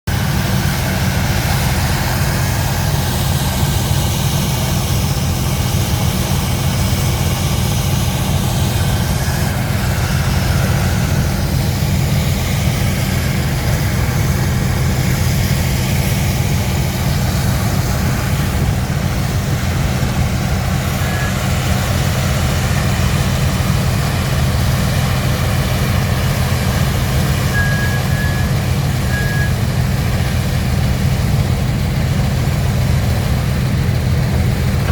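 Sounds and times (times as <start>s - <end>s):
heavy diesel engine rumbling: 0.0s - 34.9s
short high beeps: 27.5s - 29.6s.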